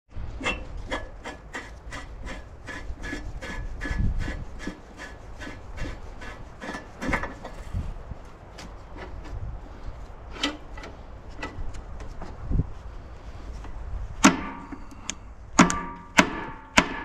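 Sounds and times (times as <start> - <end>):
hand tool rasping: 0.5 - 7.9.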